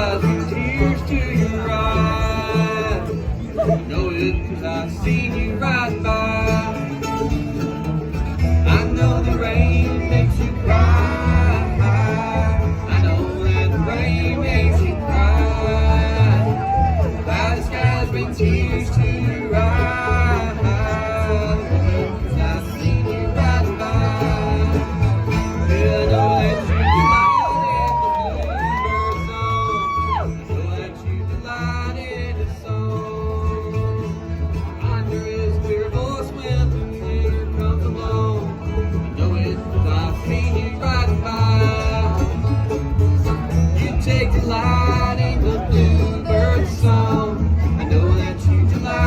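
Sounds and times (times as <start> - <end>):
banjo picking: 0.0 - 49.0
bluegrass band playing: 0.0 - 49.0
plucked strings: 0.0 - 49.0
steady bass line: 0.0 - 49.0.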